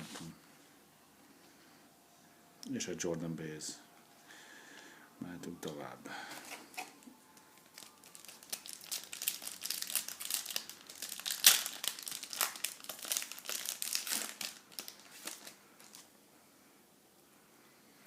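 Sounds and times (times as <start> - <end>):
plastic wrapper tearing and crinkling: 6.4 - 16.1.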